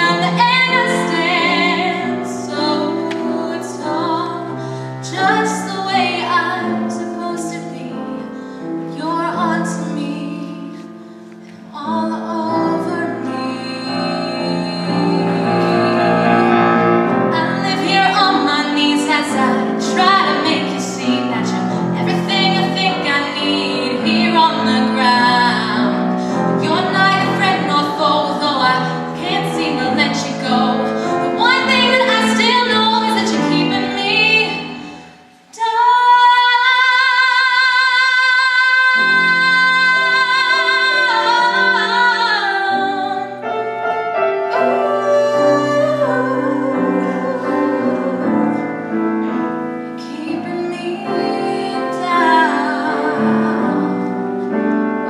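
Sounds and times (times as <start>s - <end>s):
woman singing: 0.0s - 11.0s, 11.6s - 43.4s, 44.4s - 55.0s
piano accompaniment: 0.0s - 55.0s.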